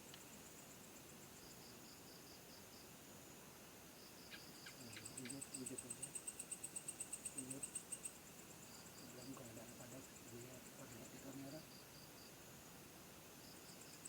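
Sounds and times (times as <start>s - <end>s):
crickets chirping: 0.0s - 14.0s
faint clicks: 0.1s - 0.3s.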